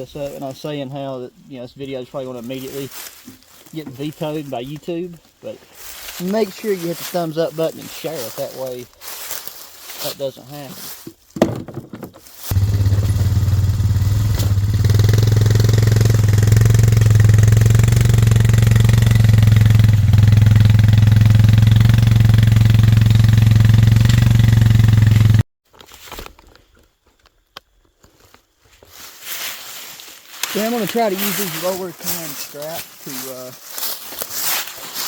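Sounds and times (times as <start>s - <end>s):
atv engine running: 12.5s - 25.4s.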